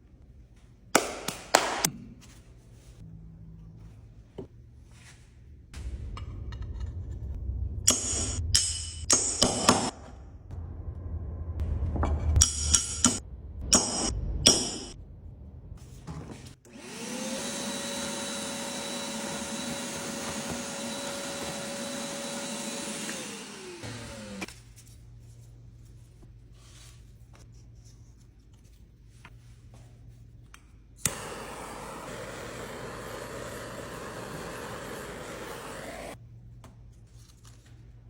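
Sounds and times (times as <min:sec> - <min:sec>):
low hum: 0:03.0 - 0:16.6
steady noise: 0:05.8 - 0:15.9.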